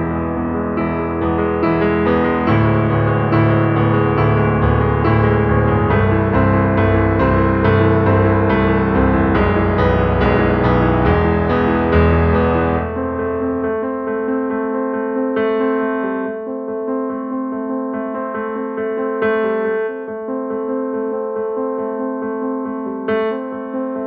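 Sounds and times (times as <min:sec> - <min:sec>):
piano music: 0:00.0 - 0:24.0.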